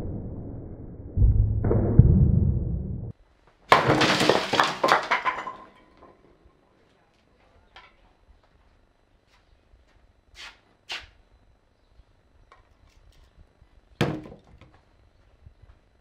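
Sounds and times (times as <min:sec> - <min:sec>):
low rumble: 0:00.0 - 0:03.1
bat breaking concrete block: 0:03.7 - 0:06.3, 0:14.0 - 0:14.6
pieces clattering: 0:03.7 - 0:06.4.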